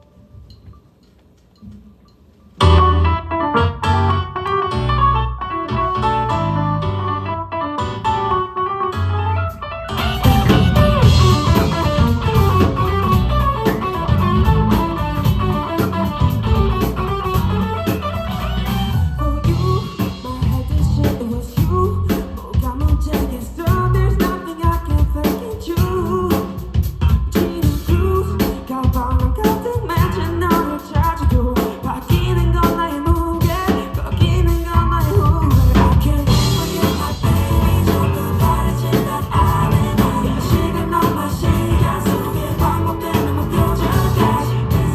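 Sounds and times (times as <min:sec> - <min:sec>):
live band playing pop: 0:02.6 - 0:44.9
person singing: 0:19.2 - 0:26.6, 0:27.3 - 0:44.9.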